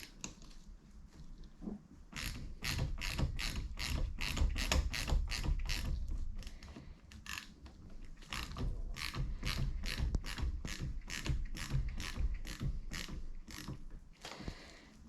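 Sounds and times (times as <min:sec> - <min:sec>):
ratchet wrench clicking: 0:02.2 - 0:06.0, 0:07.2 - 0:07.5, 0:08.3 - 0:13.7.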